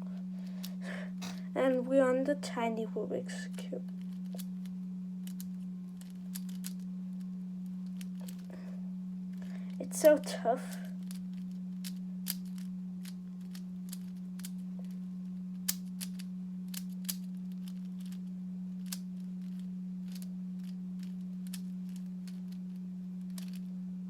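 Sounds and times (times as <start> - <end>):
steady low hum: 0.0 - 24.0
puzzle cube plastic clicks: 5.2 - 6.8, 7.8 - 8.5, 11.0 - 15.0, 15.6 - 18.2, 18.8 - 23.7.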